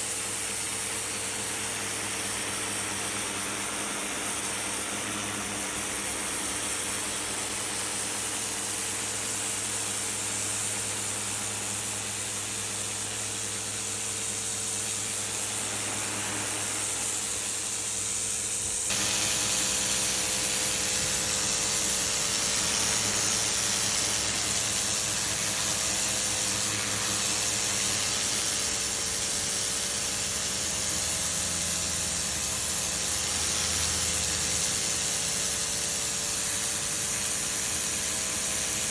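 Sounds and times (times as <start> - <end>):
pressure washer motor hum: 0.0 - 38.9
water spray hissing on concrete: 0.0 - 38.9.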